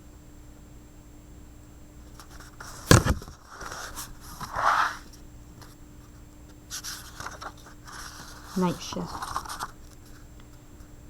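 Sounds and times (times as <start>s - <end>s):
sharp knock on book: 2.9s - 3.3s
paper scraping and rustling: 6.7s - 10.2s.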